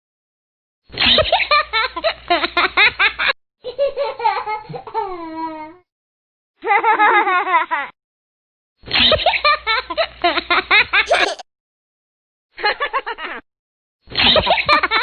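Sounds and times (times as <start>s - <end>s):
person laughing hard: 11.0s - 11.4s.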